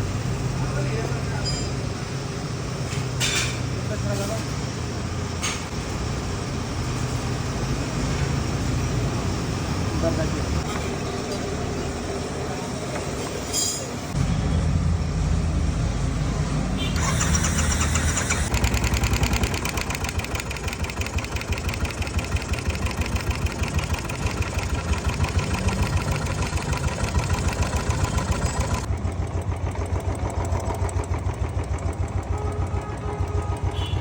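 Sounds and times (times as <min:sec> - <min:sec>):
motorcycle engine idling: 0:16.8 - 0:34.0.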